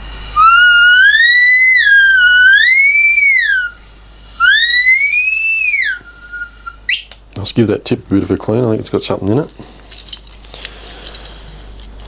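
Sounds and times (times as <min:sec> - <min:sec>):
torch tip whistling: 0:00.0 - 0:07.2.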